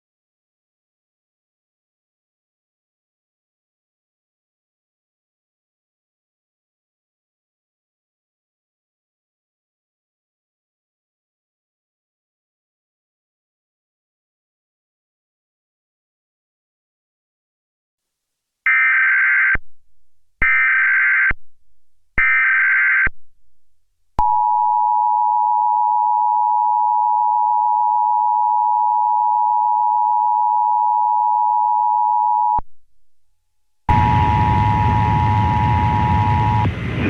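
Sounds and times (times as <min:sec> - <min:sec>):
two-tone attention signal: 0:33.9 - 0:36.7
warbling data tone bursts: 0:33.9 - 0:36.7
noisy sound: 0:33.9 - 0:37.0.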